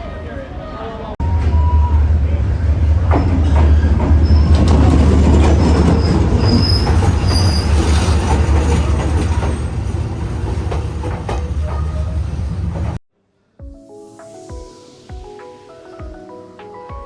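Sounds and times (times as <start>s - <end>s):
train rumbling past: 0.0s - 13.0s
high wheel squeals: 1.2s - 10.2s.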